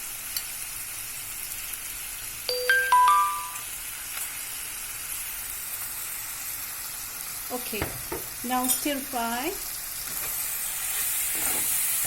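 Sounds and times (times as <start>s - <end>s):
food sizzling in a pan: 0.0s - 12.0s
ringing chime notes: 2.5s - 3.7s.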